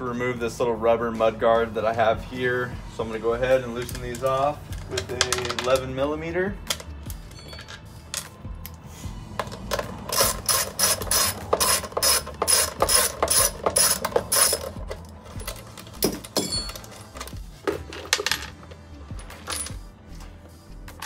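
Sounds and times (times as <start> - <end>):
ratchet wrench clicking: 9.7 - 15.6.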